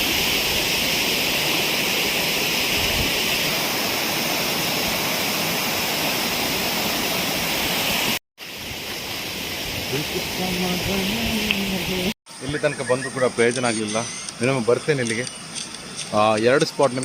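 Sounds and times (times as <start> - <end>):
river water rushing: 0.0 - 12.1.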